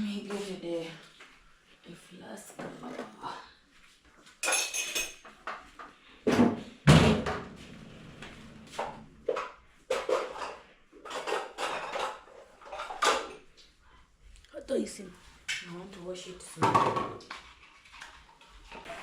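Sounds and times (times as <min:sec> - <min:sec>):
dishes and lids clattering: 0:04.4 - 0:05.6, 0:09.3 - 0:13.5.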